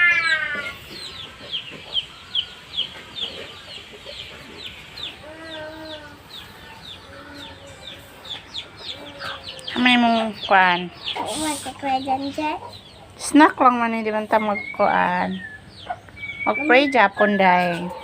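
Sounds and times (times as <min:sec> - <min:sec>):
birds chirping: 0:00.0 - 0:18.0
longer lower bird calls: 0:14.3 - 0:17.2.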